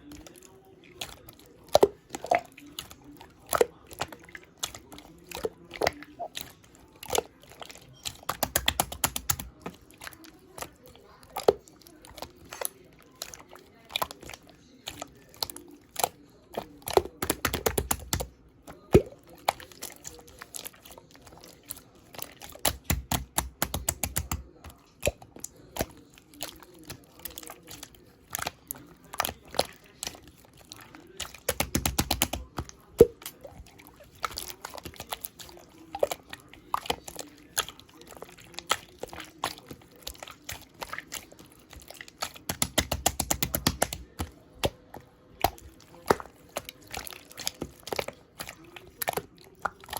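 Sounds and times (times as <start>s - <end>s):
slime squeezed making sticky clicks: 7.9s - 9.9s, 15.9s - 19.9s, 31.2s - 33.4s, 36.0s - 48.4s.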